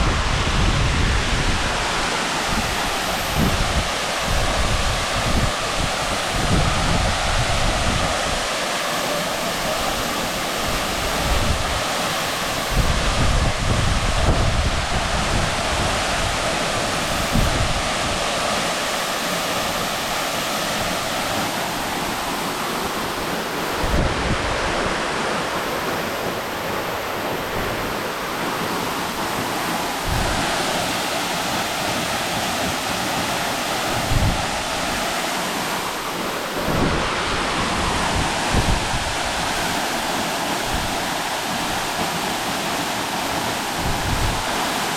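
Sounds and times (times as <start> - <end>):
wind buffeting microphone: 0.0 - 8.6, 12.6 - 18.5, 20.8 - 32.8, 33.7 - 41.9, 43.7 - 44.6
waterfall rushing: 0.0 - 44.9.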